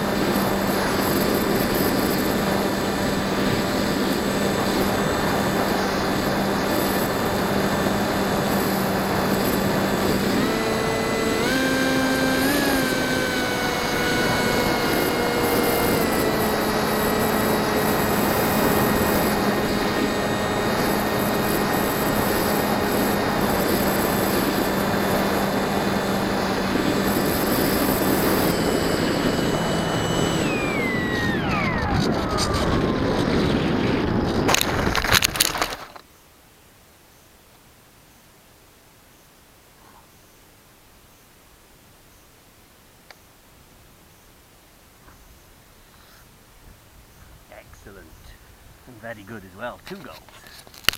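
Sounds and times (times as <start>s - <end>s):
wind rush: 0.0s - 11.6s, 12.4s - 35.8s
electric motor and propeller whining: 0.0s - 36.0s.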